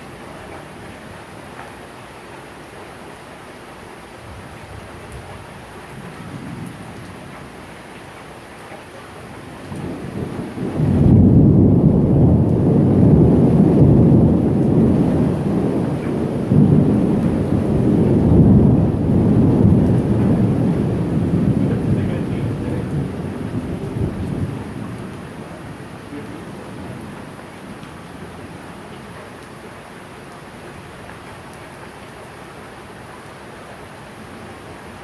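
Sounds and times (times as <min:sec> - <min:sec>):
steady rain: 0:00.0 - 0:35.0
low thunder rumble: 0:09.6 - 0:28.9.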